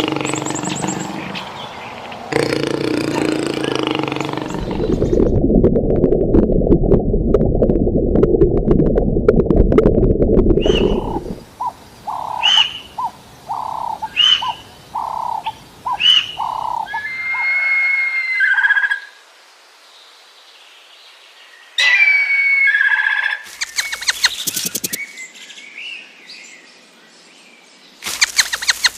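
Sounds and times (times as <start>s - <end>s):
loud low rumbling animal noise: 0.0s - 6.0s, 9.1s - 12.4s.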